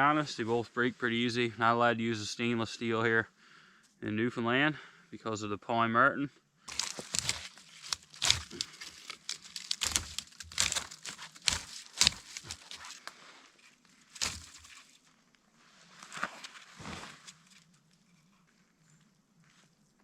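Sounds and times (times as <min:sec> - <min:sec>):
brush and twigs rustling and crackling: 0:06.7 - 0:20.0.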